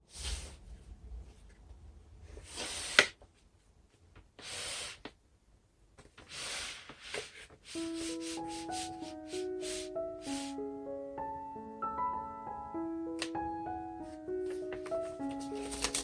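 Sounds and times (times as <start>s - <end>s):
soft piano music: 7.7s - 16.0s
packaging rustling: 14.4s - 16.0s.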